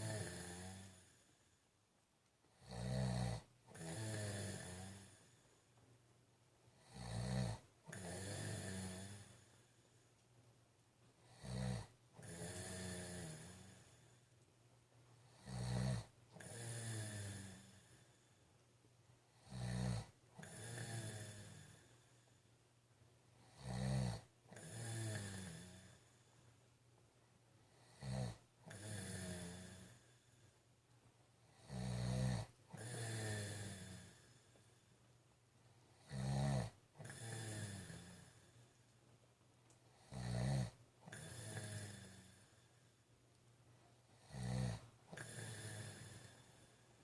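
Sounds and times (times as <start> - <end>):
man snoring: 0.0 - 1.5, 2.5 - 5.5, 6.8 - 9.8, 11.2 - 14.3, 15.2 - 18.3, 19.3 - 22.4, 23.4 - 26.3, 27.7 - 30.5, 31.5 - 34.8, 35.9 - 38.7, 39.9 - 42.8, 44.1 - 47.0.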